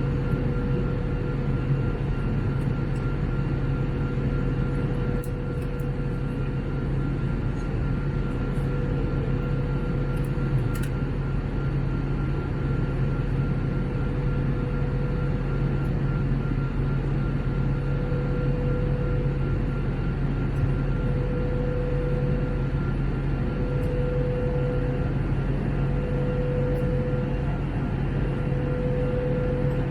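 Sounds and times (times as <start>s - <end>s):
airflow rushing in aircraft cabin: 0.0s - 29.9s
jet engines droning: 0.0s - 29.9s
faint whining tones: 11.8s - 29.9s.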